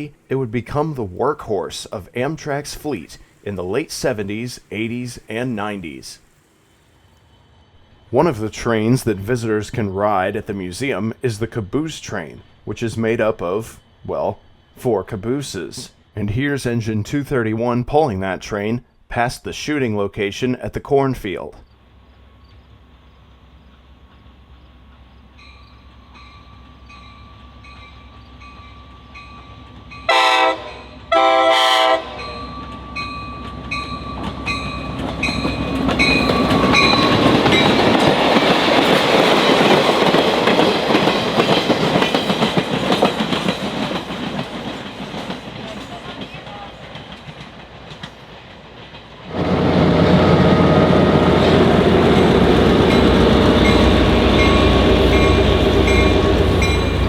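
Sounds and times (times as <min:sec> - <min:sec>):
train passing with wheel noise: 0:00.0 - 0:18.6, 0:21.6 - 0:57.0
train horn blasts: 0:30.1 - 0:32.5, 0:49.3 - 0:57.0
even ringing beat: 0:51.9 - 0:57.0.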